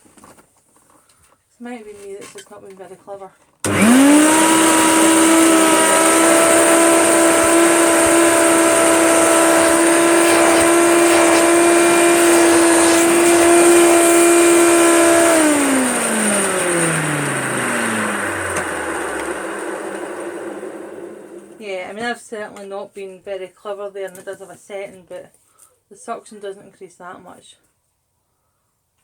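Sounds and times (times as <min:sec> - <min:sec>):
vacuum cleaner motor whine: 0:03.6 - 0:21.6
vacuum motor winding down: 0:03.6 - 0:21.6.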